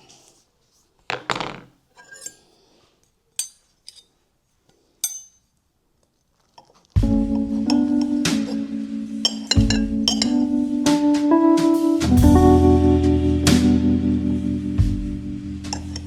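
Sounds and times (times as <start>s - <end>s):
background music: 7.0s - 16.0s.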